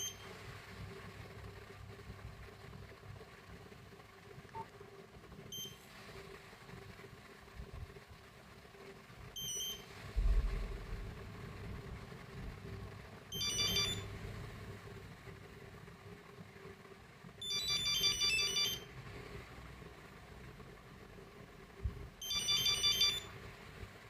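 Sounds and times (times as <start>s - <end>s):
monophonic phone ringtone beeps: 0.0s - 0.2s, 9.4s - 9.8s, 13.3s - 14.1s, 17.4s - 18.9s, 22.2s - 23.3s
low bump: 10.2s - 11.4s.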